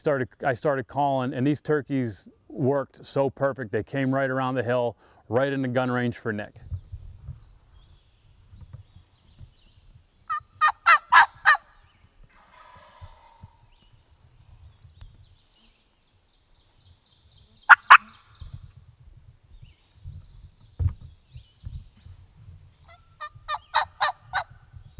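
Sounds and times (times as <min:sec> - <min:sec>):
songbird trilling: 0:06.6 - 0:18.6, 0:22.8 - 0:24.9
turkeys gobbling: 0:10.3 - 0:11.6, 0:12.3 - 0:13.6, 0:17.7 - 0:18.2, 0:22.9 - 0:24.5.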